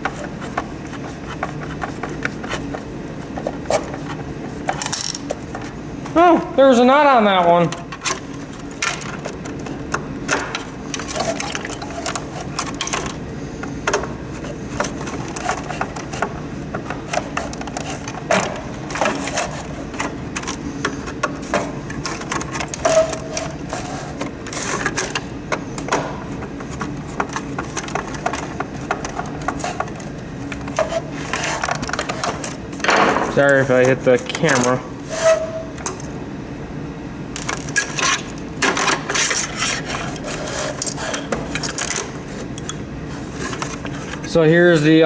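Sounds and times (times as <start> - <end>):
tools and parts clicking: 3.7 - 5.7, 7.7 - 13.2, 37.3 - 42.8.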